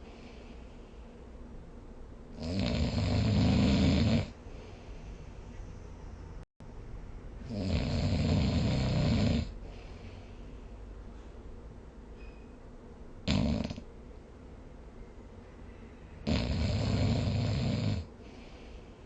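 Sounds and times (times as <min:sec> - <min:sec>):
quiet breathing: 0:00.0 - 0:01.6, 0:04.0 - 0:06.4, 0:08.8 - 0:12.4, 0:15.2 - 0:19.0
person snoring: 0:02.4 - 0:04.4, 0:07.4 - 0:09.6, 0:13.3 - 0:13.8, 0:16.2 - 0:18.1.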